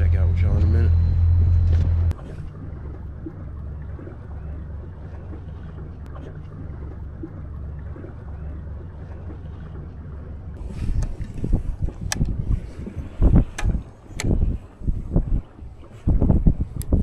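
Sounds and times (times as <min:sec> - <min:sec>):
outboard motor droning: 0:00.0 - 0:17.0
wind noise: 0:10.6 - 0:17.0.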